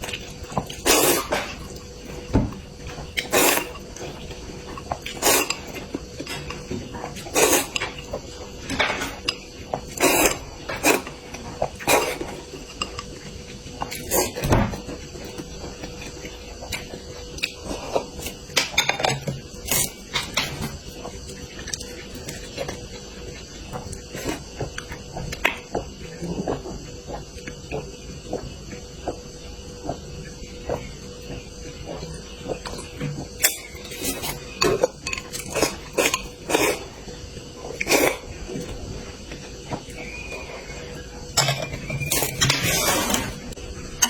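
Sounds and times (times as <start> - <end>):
faint steady hum: 0.0 - 44.0
utensils clicking against dishes: 33.4 - 36.8.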